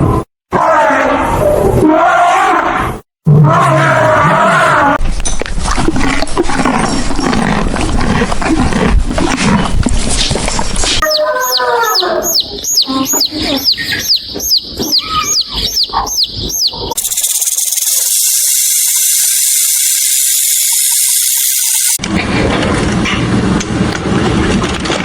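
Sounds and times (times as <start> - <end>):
lower animal calls: 11.0 - 18.1
high falling animal chirps: 11.0 - 22.0
high-pitched buzz: 17.0 - 22.0.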